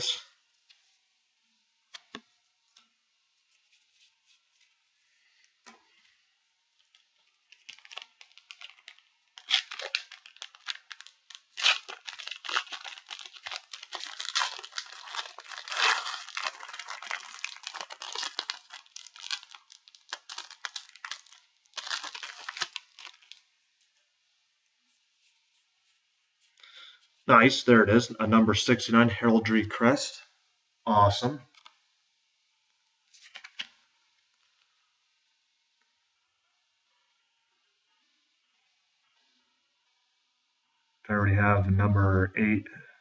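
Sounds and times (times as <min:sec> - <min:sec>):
foil wrapper tearing and crinkling: 0:06.8 - 0:23.5, 0:33.2 - 0:33.8.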